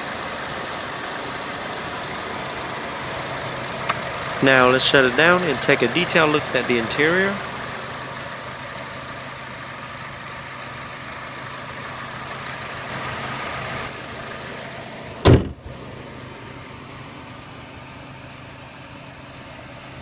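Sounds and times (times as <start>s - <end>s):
car hood slamming shut: 15.3s - 15.6s.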